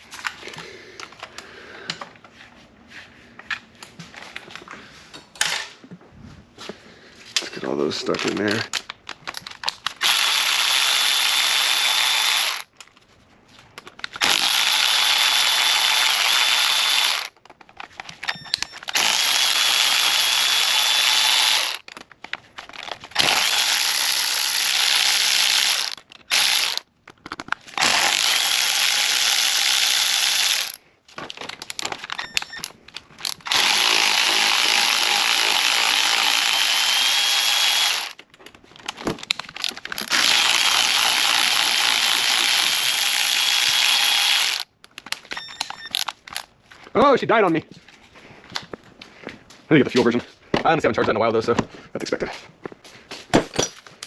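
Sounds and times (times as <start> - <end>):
electric ratchet whining: 9.9 - 12.7, 14.2 - 17.3, 18.2 - 21.9, 22.7 - 26.9, 27.8 - 30.8, 32.0 - 38.2, 39.6 - 44.7.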